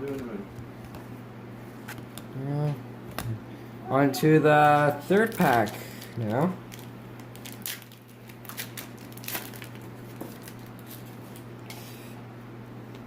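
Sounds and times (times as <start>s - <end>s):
steady low hum: 0.0s - 13.0s
wrapper rustling and tearing: 5.0s - 11.5s.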